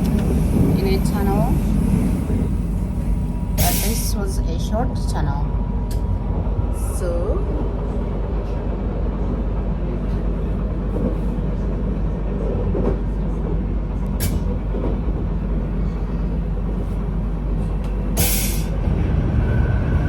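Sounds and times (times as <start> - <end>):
train rumbling on rails: 0.0 - 20.0
brief sharp hiss: 18.2 - 18.7.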